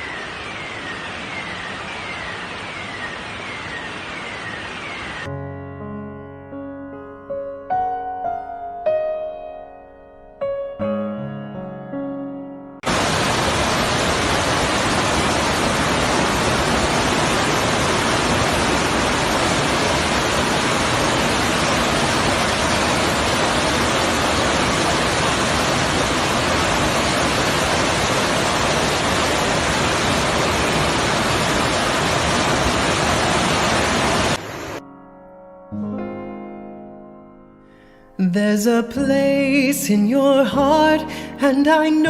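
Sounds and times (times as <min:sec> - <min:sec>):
floodwater rushing: 0:12.8 - 0:34.8.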